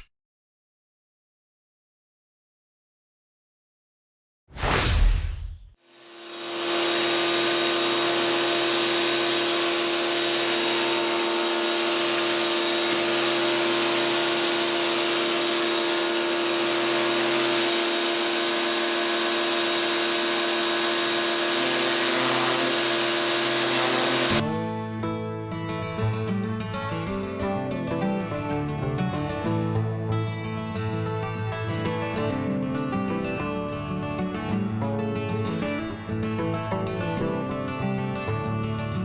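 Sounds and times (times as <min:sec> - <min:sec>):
pressure washer running: 0:05.9 - 0:24.4.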